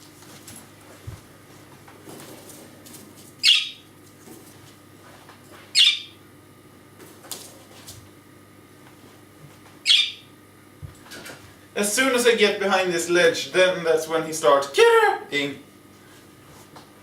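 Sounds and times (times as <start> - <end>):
budgerigar calling: 3.4 - 3.8, 5.8 - 6.1, 9.9 - 10.2.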